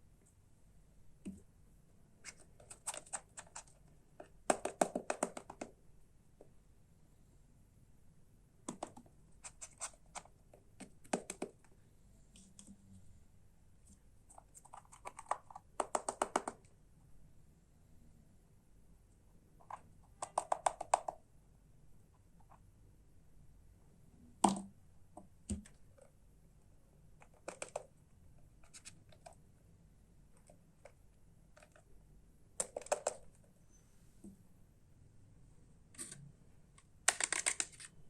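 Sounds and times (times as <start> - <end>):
plastic toy parts clicking: 37.1 - 37.9.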